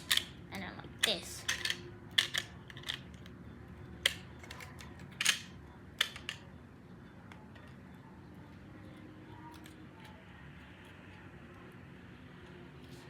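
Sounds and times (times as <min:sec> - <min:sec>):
plastic bricks clicking: 0:00.0 - 0:00.3, 0:01.0 - 0:03.3, 0:04.0 - 0:06.4.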